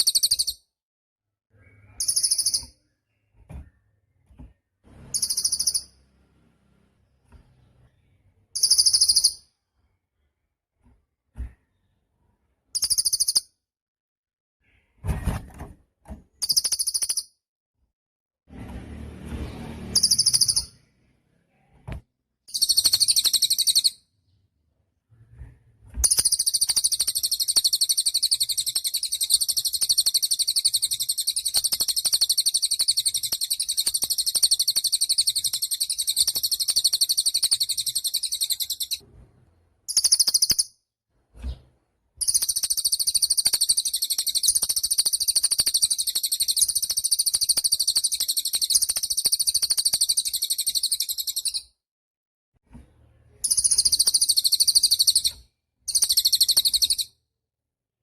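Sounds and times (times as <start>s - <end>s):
songbird chattering trill: 1.7s - 2.7s, 53.4s - 57.0s.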